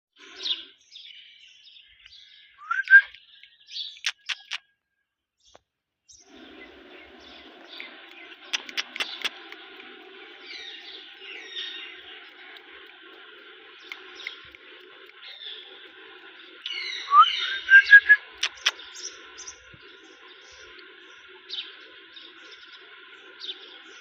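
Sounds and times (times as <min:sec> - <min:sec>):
parrot chirping and calling: 0:04.0 - 0:04.6, 0:08.1 - 0:09.6, 0:16.6 - 0:19.6
sharp high clicks: 0:04.0 - 0:04.6, 0:07.8 - 0:16.8, 0:17.7 - 0:19.1.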